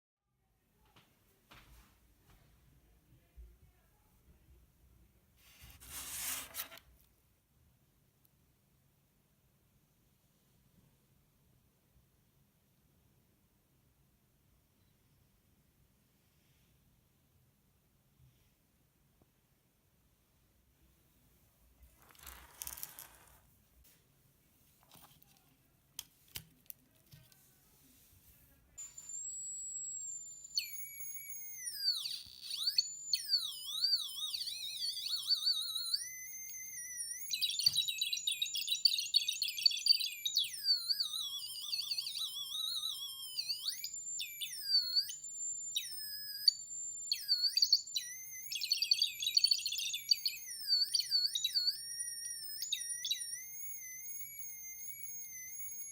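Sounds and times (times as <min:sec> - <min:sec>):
electronic beeping tones: 0:28.8 - 0:55.9.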